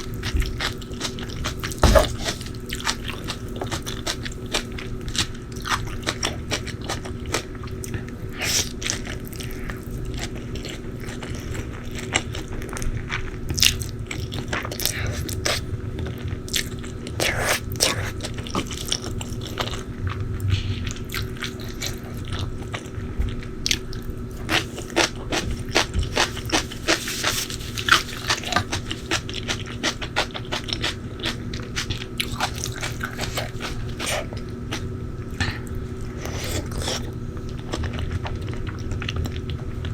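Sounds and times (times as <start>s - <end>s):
crunchy chewing: 0.0s - 39.9s
faint steady hum: 0.0s - 39.9s.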